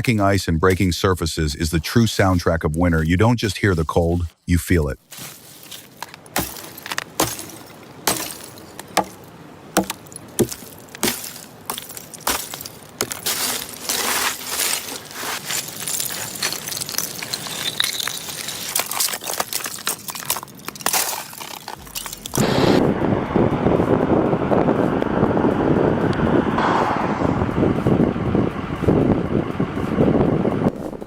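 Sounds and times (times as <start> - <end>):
ice cracking and breaking: 9.8 - 22.4.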